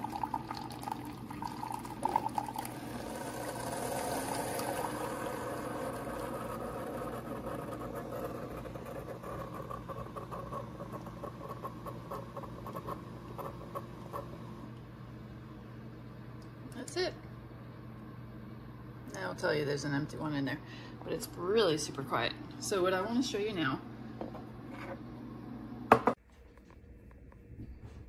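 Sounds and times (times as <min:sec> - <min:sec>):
coffee pouring into mug: 0:00.0 - 0:07.8
coffee maker running: 0:00.0 - 0:15.1.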